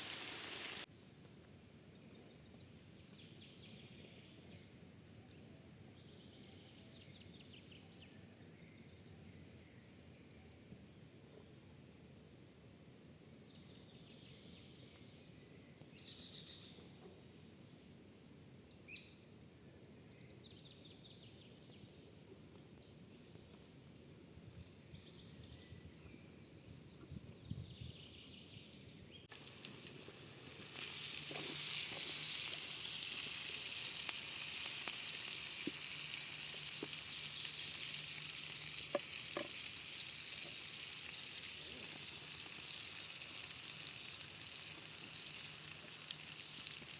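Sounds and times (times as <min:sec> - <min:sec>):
vegetables sizzling in a pan: 0:00.0 - 0:00.9, 0:29.3 - 0:46.9.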